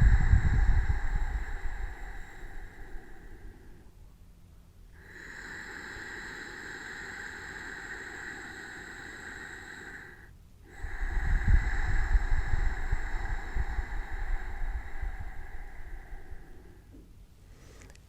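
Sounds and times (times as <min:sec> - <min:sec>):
air buffeting microphone: 0:00.0 - 0:03.8, 0:10.7 - 0:17.1
slow hissing breath: 0:00.0 - 0:18.0.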